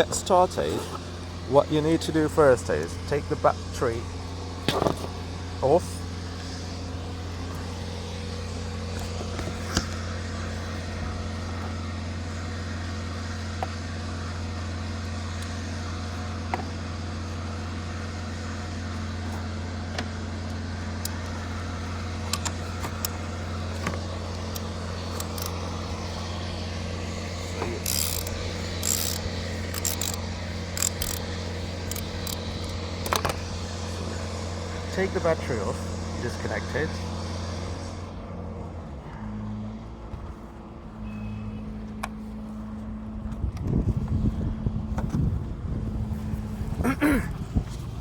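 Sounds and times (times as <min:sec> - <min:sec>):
steady low hum: 0:00.0 - 0:48.0
tools clinking on battery terminal: 0:23.9 - 0:25.6, 0:27.8 - 0:33.4
sharp clicks: 0:27.8 - 0:33.4.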